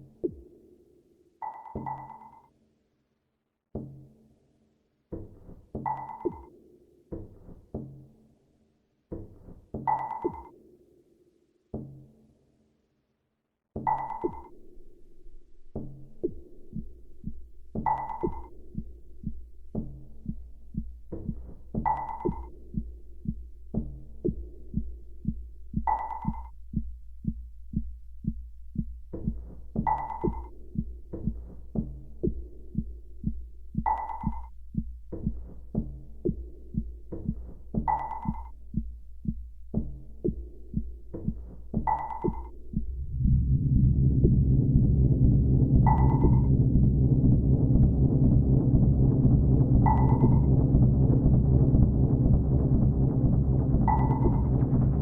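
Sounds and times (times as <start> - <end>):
fast electronic clicks: 13.9 - 14.5, 17.8 - 18.5, 21.8 - 22.5, 33.9 - 34.5, 41.9 - 42.5, 43.4 - 55.0
steady low hum: 14.8 - 55.0
louder fuller sound: 42.8 - 55.0
bright electronic ping: 45.8 - 47.1.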